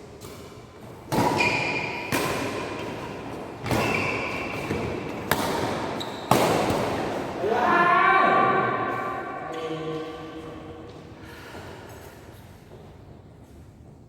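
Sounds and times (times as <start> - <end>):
rackets hitting shuttlecock: 0.2 - 7.4.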